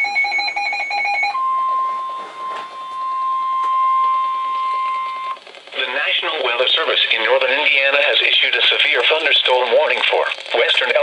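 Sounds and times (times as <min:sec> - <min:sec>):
steady warning alarm tone: 0:00.0 - 0:05.4.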